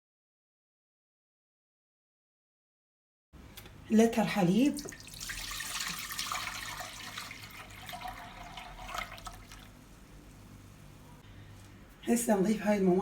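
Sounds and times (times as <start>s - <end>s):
milk pouring into a pot: 4.8s - 9.8s.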